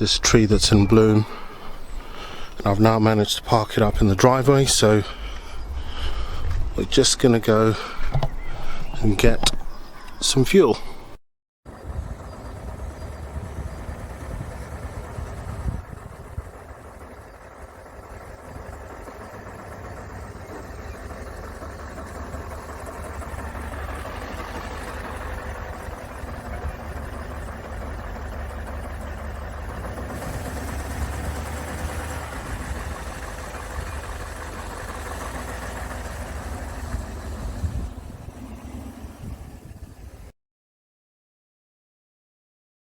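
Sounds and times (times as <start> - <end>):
diesel engine knocking: 11.7 - 40.3.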